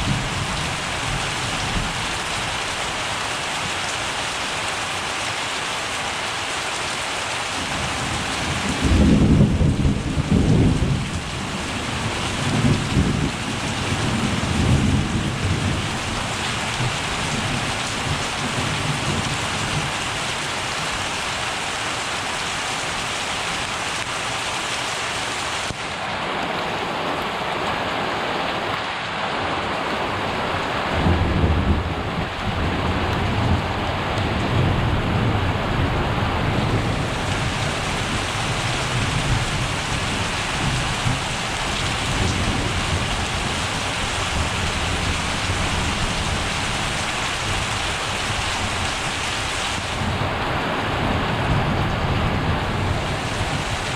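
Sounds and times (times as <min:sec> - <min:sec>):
steady rain: 0:00.0 - 0:53.9
thunder rumbling: 0:07.6 - 0:20.0, 0:30.9 - 0:47.6.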